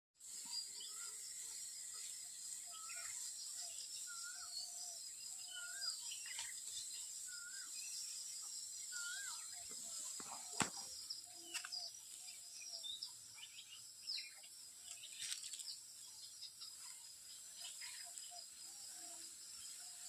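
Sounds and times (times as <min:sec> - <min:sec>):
high-pitched insect drone: 0:00.2 - 0:20.0
birds whistling and chirping: 0:00.3 - 0:15.6.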